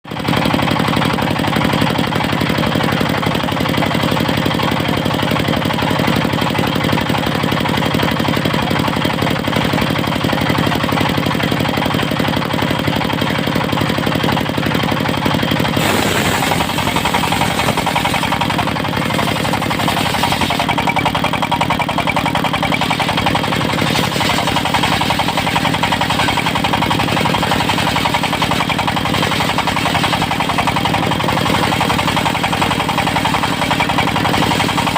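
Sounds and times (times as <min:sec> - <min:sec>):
diesel engine running: 0:00.1 - 0:34.9
bright hiss: 0:15.8 - 0:18.6.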